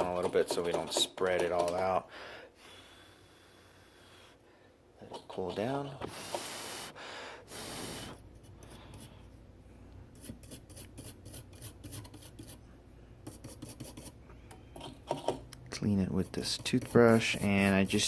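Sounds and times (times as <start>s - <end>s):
blown air hissing: 6.0s - 8.2s.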